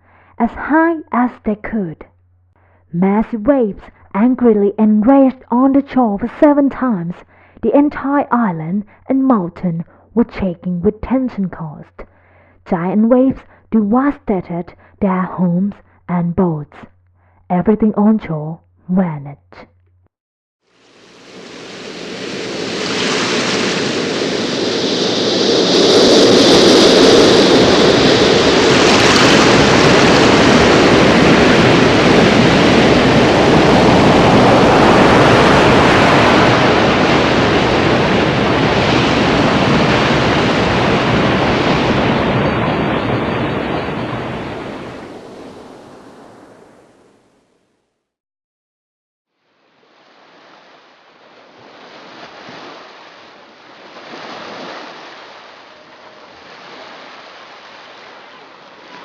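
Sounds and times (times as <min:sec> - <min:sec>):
wind: 0:20.6 - 0:47.4, 0:49.3 - 0:59.0
heavy ocean surf crashing: 0:20.8 - 0:47.1, 0:51.5 - 0:59.0.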